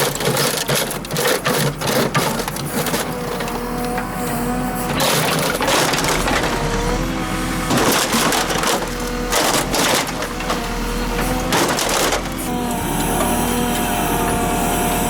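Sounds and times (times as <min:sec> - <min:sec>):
diesel engine running: 0:00.0 - 0:15.0
sheet metal crunching: 0:02.1 - 0:12.5.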